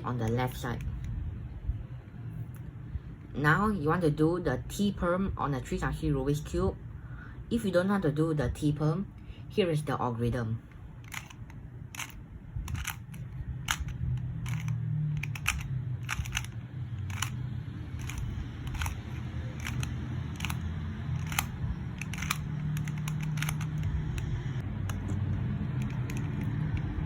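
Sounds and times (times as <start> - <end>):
plastic puzzle cube clicks: 11.0 - 17.4, 18.0 - 25.2, 25.8 - 27.0.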